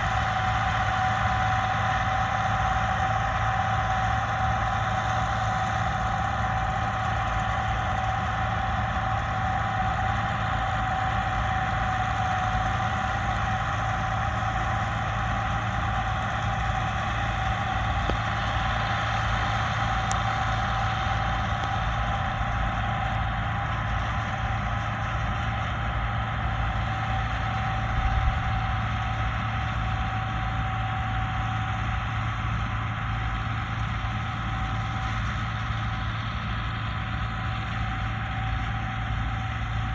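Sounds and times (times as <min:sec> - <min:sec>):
diesel engine running with whine: 0:00.0 - 0:39.9.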